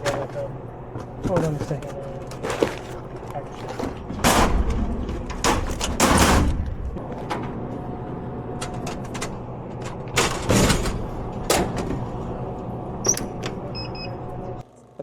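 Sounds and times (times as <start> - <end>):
vending machine clunks and knocks: 3.8 - 7.5, 8.7 - 12.1
heavy bang: 4.1 - 7.0.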